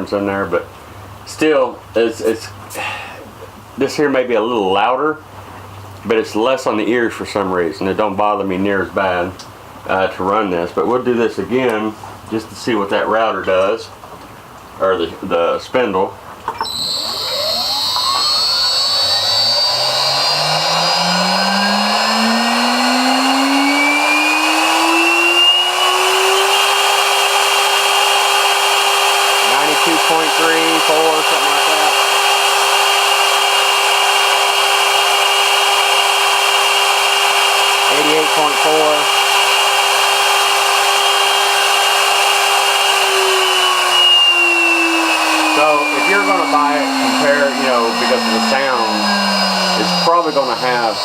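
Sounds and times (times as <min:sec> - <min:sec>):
router spindle whine: 0:16.5 - 0:51.0.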